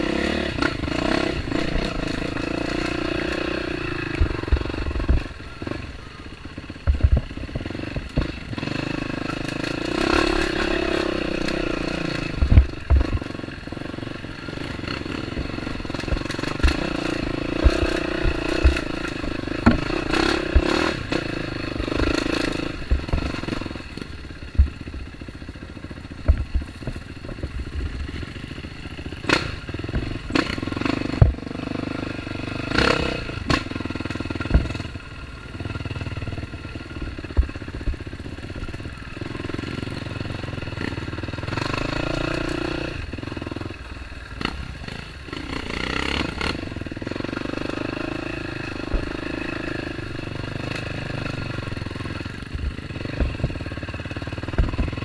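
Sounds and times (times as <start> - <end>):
dirt bike engine: 0.0 - 55.0
bike knocking and clattering: 6.7 - 31.8, 32.7 - 36.0, 36.8 - 38.9, 50.5 - 55.0.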